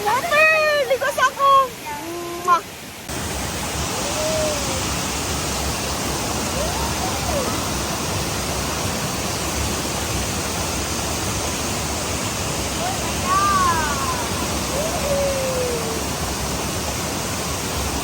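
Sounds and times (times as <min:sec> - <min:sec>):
waterfall rushing: 0:00.0 - 0:18.0.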